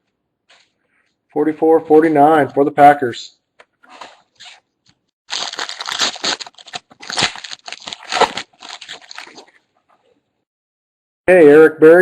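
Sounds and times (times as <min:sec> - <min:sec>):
foil wrapper tearing and crinkling: 0:05.3 - 0:09.6.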